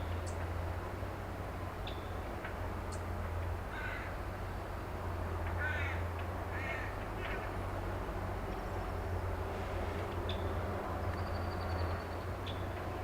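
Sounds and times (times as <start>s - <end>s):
excavator engine drone: 0.0s - 13.0s
crow cawing: 3.7s - 4.1s, 5.6s - 6.9s.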